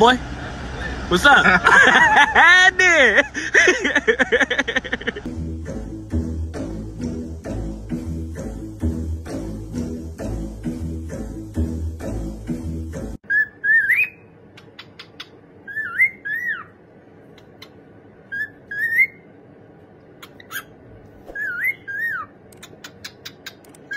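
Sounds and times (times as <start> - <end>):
music: 5.3 - 13.2
pet bird whistling: 13.2 - 16.8, 17.4 - 19.3, 20.2 - 23.9.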